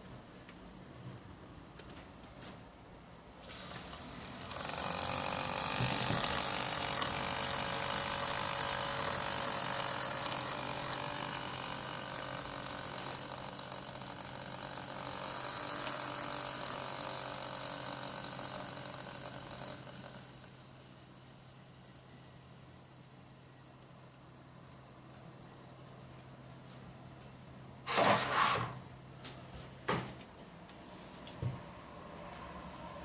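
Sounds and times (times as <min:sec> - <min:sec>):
steady low hum: 0:00.0 - 0:28.2
cooler pump rattling: 0:03.7 - 0:20.6.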